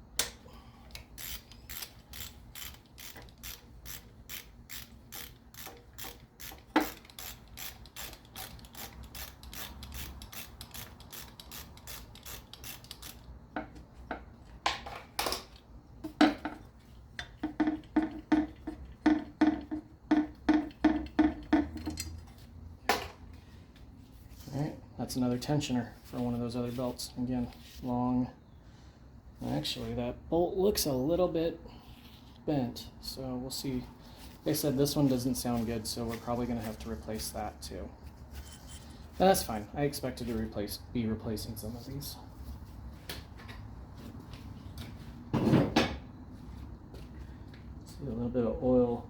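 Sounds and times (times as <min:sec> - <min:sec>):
ratchet wrench clicking: 0:00.2 - 0:13.3.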